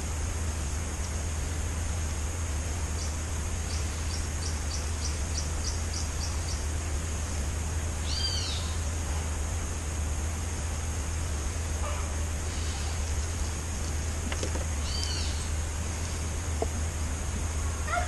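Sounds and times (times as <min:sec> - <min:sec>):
steady low rumble: 0:00.0 - 0:18.0
birds chirping: 0:02.9 - 0:06.8, 0:08.0 - 0:09.0, 0:11.2 - 0:17.0.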